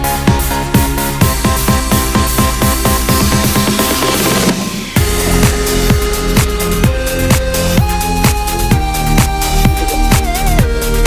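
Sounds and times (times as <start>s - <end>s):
electronic dance music: 0.0s - 11.0s
rising noise sweep: 3.8s - 11.0s.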